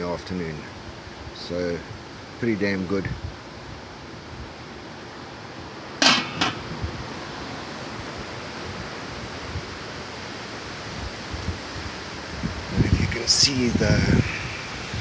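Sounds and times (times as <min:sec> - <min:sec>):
metal cooking pot clinking: 0:06.0 - 0:06.8
steady hiss: 0:12.7 - 0:15.0.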